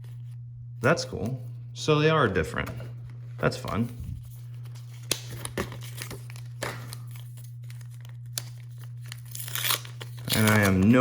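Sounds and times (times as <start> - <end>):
wrapper crinkling and tearing: 5.0 - 11.0.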